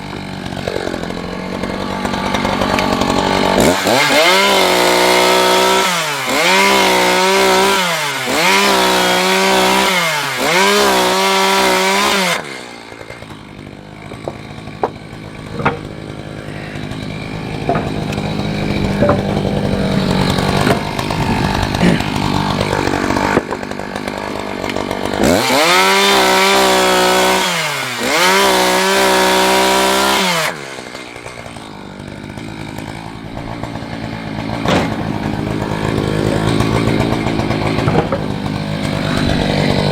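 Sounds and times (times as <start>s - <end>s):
chainsaw revving and idling: 0.0s - 39.9s
knocks: 14.3s - 16.0s, 17.5s - 18.2s.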